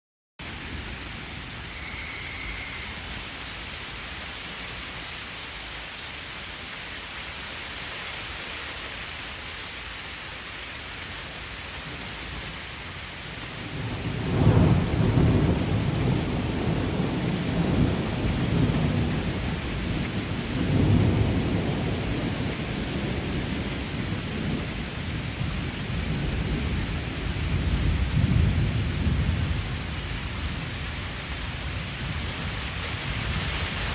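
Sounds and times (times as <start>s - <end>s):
steady rain: 0.4s - 33.9s
thunder rumbling: 13.6s - 24.9s.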